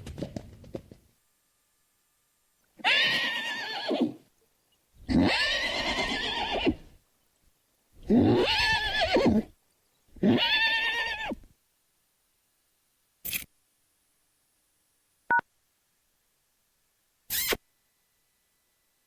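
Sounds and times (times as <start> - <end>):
horse whinnying: 2.8 - 4.2, 5.0 - 6.9, 8.0 - 9.5, 10.2 - 11.4.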